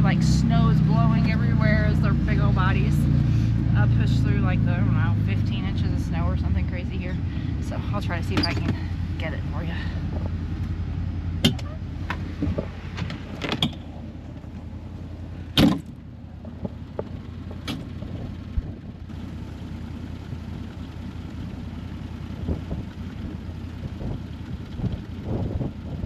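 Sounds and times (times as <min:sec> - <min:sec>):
utility vehicle engine hum: 0:00.0 - 0:26.0.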